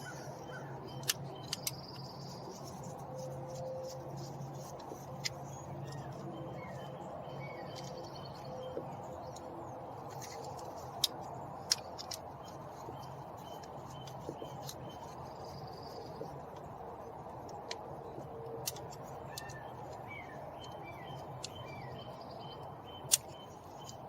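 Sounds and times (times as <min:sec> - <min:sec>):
clicks of plastic parts handled: 0:00.0 - 0:02.9, 0:07.7 - 0:15.2, 0:17.4 - 0:20.8, 0:23.0 - 0:24.0
steady low hum: 0:00.0 - 0:24.0.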